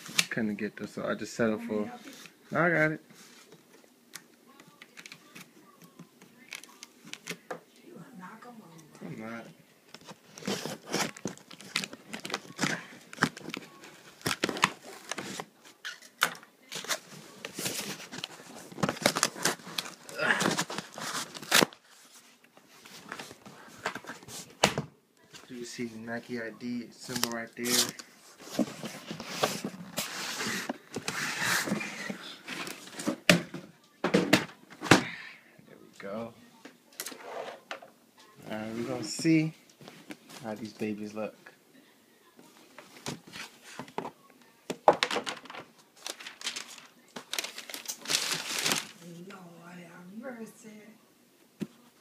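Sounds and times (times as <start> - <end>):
cardboard and paper rustling: 9.9 - 15.8, 16.6 - 24.6, 27.1 - 33.3, 44.9 - 49.2.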